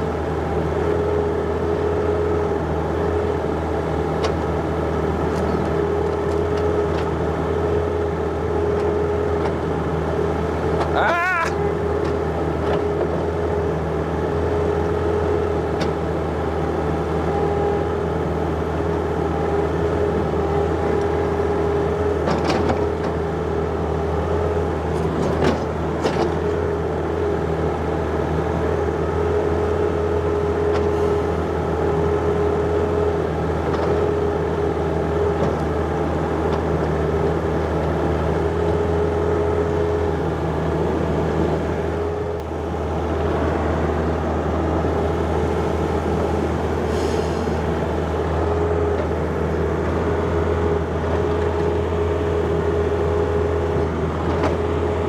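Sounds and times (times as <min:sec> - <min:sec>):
excavator diesel engine running: 0:00.0 - 0:55.0
high hydraulic whine: 0:44.8 - 0:48.4.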